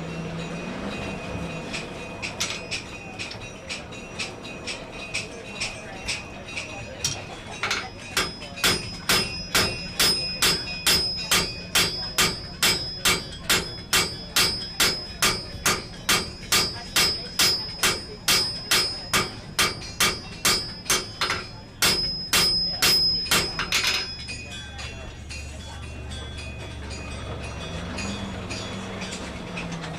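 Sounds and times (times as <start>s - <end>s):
hammer striking steel on anvil: 1.7s - 25.0s.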